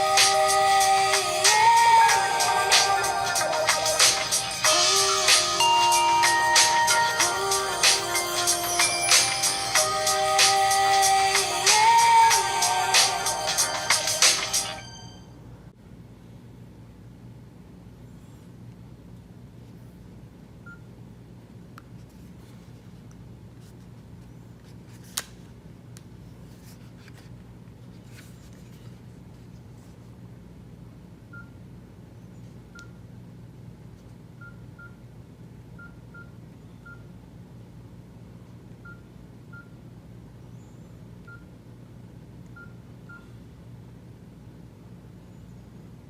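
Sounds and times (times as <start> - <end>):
low steady hum: 0.0 - 46.0.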